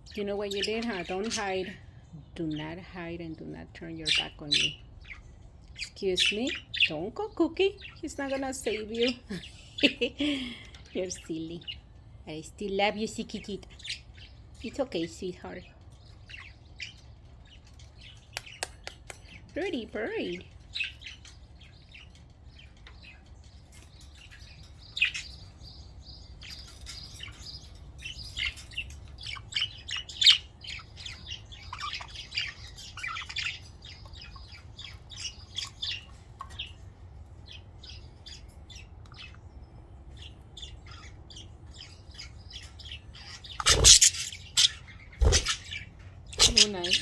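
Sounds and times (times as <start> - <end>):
budgerigars chirping and warbling: 0.0 - 47.0.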